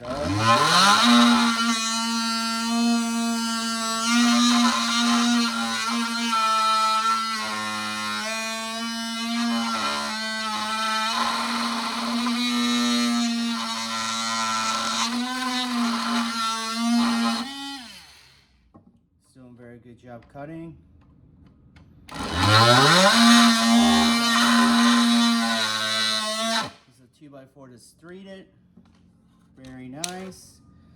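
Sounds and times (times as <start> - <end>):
oscillating multitool buzzing: 0.0 - 18.2, 22.1 - 26.7.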